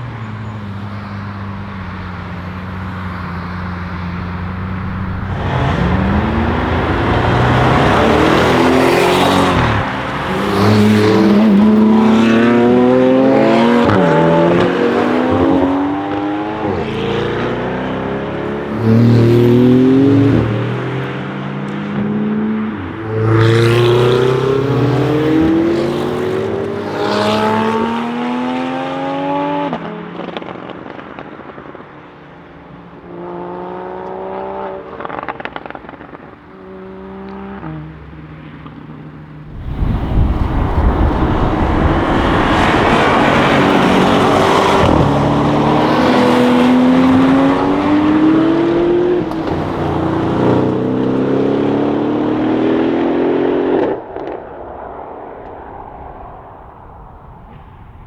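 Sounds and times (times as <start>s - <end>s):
car engine revving hard: 2.5s - 20.7s, 39.4s - 54.4s.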